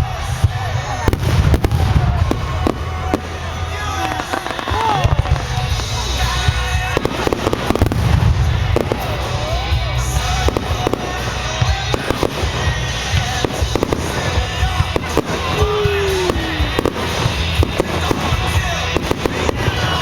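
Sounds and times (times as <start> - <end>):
fireworks booming and crackling: 0.0 - 20.0
high gliding firework whistles: 10.3 - 20.0.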